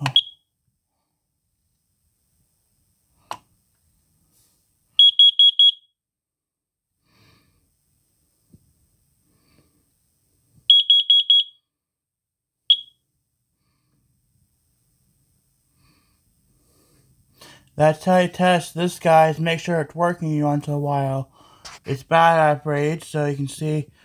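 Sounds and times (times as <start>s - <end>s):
alarm click: 0.0s - 0.4s, 12.7s - 13.0s
high-pitched alarm beeps: 0.0s - 0.4s, 5.0s - 5.9s, 10.7s - 11.6s, 12.7s - 13.0s.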